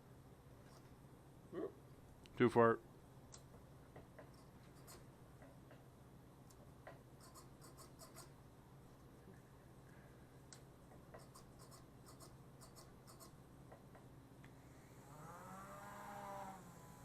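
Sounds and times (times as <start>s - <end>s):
low steady hum: 0.0s - 17.0s
small clicks and scratches: 4.2s - 5.1s, 6.5s - 8.3s, 10.5s - 13.4s.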